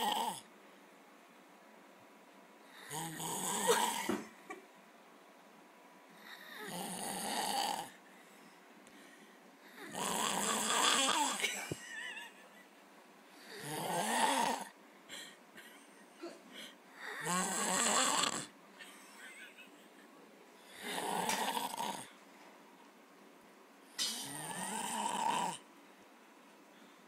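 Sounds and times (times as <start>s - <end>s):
man snoring: 0.0s - 0.5s, 2.7s - 4.1s, 6.2s - 8.0s, 9.7s - 11.4s, 13.4s - 14.8s, 17.0s - 18.5s, 20.7s - 22.1s, 24.1s - 25.6s.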